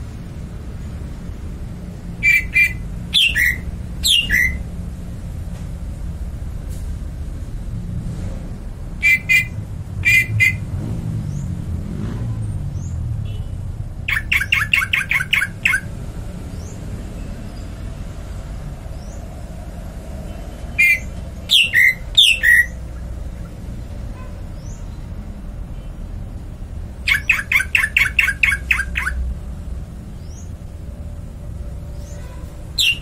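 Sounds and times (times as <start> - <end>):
bird calling: 2.1 - 4.7, 9.0 - 10.7, 14.1 - 15.9, 20.6 - 25.0, 27.0 - 29.3, 32.0 - 33.0.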